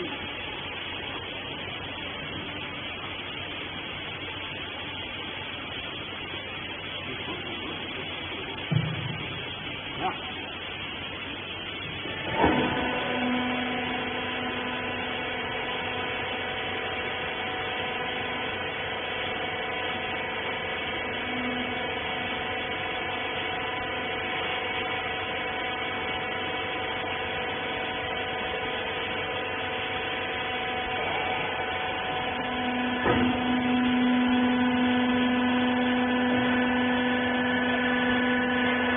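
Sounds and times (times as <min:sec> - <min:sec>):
electric motor and pump humming: 0:00.0 - 0:38.9
baler clunk: 0:33.0 - 0:33.4.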